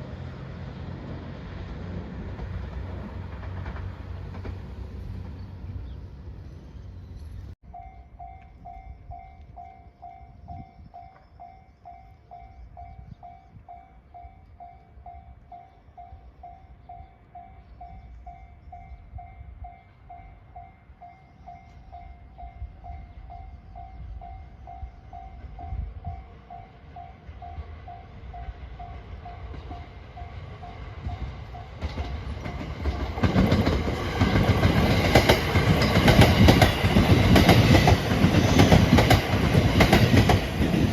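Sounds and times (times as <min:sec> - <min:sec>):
low rumble of rail traffic: 0:00.0 - 0:40.9
level-crossing warning bell: 0:07.6 - 0:33.2.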